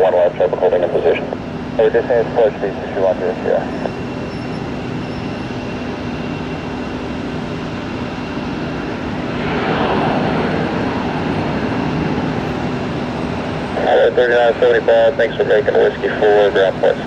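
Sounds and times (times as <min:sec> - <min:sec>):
jet engines humming: 0:00.0 - 0:17.0
rushing noise: 0:08.4 - 0:14.8.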